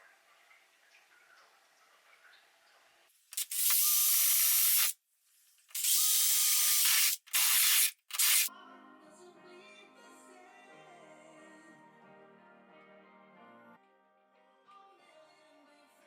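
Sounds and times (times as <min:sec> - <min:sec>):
music: 0:08.5 - 0:16.0.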